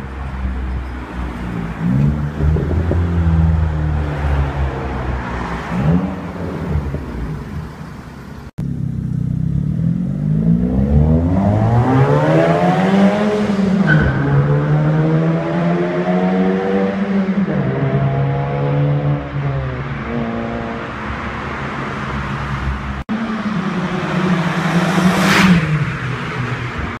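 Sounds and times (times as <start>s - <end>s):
car engine accelerating: 8.6s - 21.0s, 21.6s - 27.0s.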